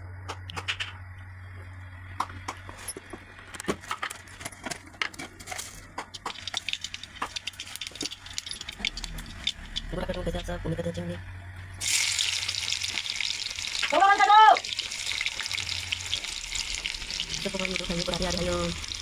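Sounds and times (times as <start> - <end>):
steady low hum: 0.0 - 13.6
utensils and dishes clinking: 4.3 - 10.4.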